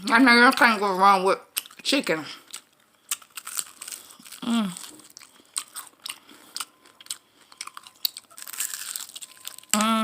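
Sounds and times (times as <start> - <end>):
crunchy chewing: 1.5 - 9.9
person humming: 4.4 - 4.8.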